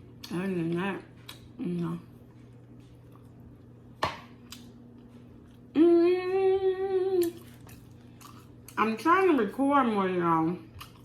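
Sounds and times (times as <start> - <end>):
person humming: 5.7 - 7.4.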